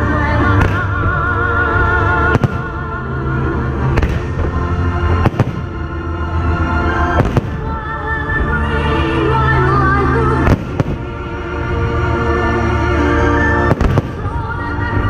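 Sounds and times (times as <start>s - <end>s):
music with steady bass: 0.0s - 15.0s
fireworks bangs: 0.4s - 3.1s, 3.8s - 6.0s, 7.2s - 8.6s, 10.4s - 11.3s, 13.7s - 15.0s.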